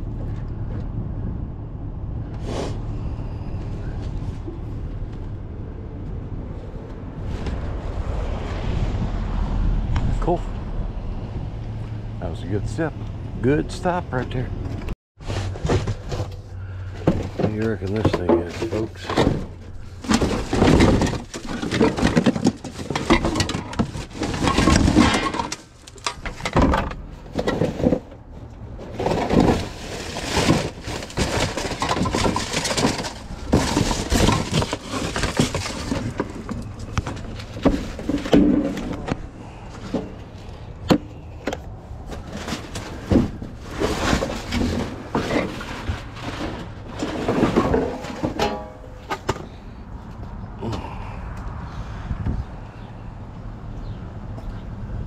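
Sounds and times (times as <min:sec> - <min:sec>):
rummaging through scrap: 0:15.2 - 0:49.6.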